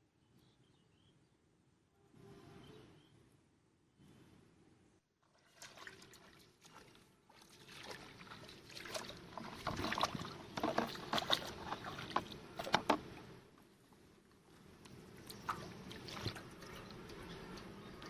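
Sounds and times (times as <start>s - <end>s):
water splashing and sloshing: 5.2s - 18.0s.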